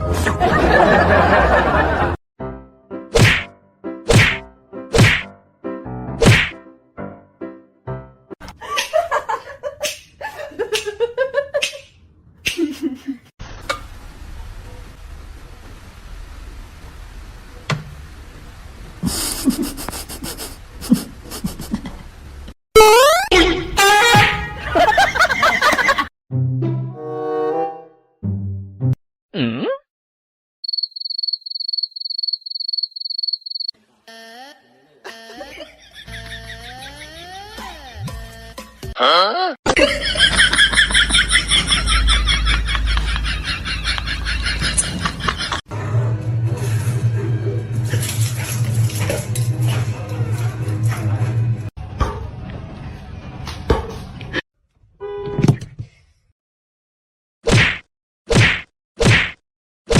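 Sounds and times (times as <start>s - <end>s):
music: 0.0s - 0.6s, 2.4s - 8.4s, 26.3s - 29.0s, 36.2s - 39.0s, 45.7s - 54.3s
person laughing: 8.5s - 11.8s, 12.5s - 13.3s, 19.0s - 22.0s, 24.7s - 26.1s, 34.1s - 38.2s, 39.0s - 45.6s
high pulsing chirp: 30.6s - 33.7s.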